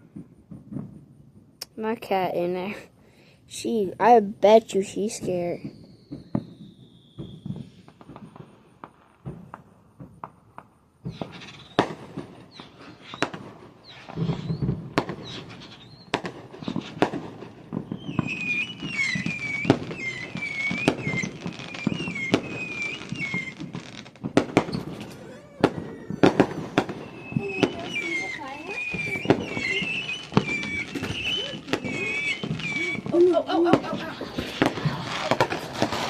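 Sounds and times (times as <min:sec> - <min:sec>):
fireworks popping: 0:00.0 - 0:36.0
high warbling whistle: 0:18.0 - 0:23.6, 0:24.7 - 0:36.0.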